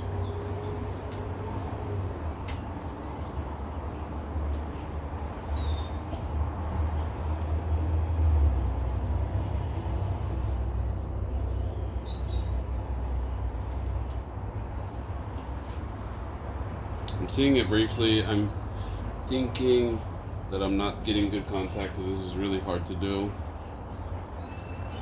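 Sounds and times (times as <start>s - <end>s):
faint bird chirps: 23.4s - 25.0s.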